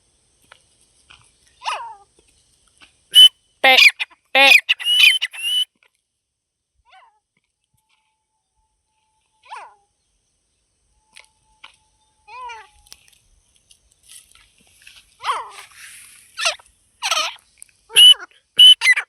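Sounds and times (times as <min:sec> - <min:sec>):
partridge calls falling in pitch: 0:03.2 - 0:05.6, 0:18.0 - 0:19.0.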